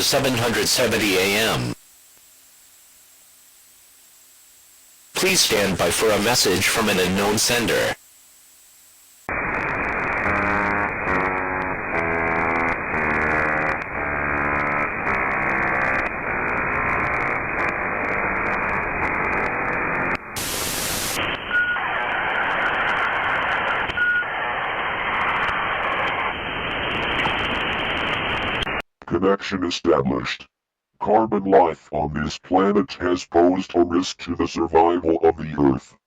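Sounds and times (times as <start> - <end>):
modem buzzy tones: 0.0 - 28.8
static burst: 0.0 - 28.8
telephone line hiss: 0.0 - 28.8.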